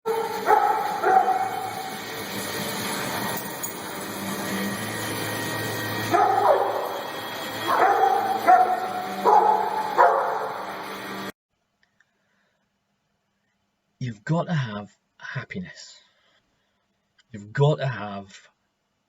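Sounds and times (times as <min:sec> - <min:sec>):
dog barking and yelping: 0:00.1 - 0:02.1, 0:06.0 - 0:10.8.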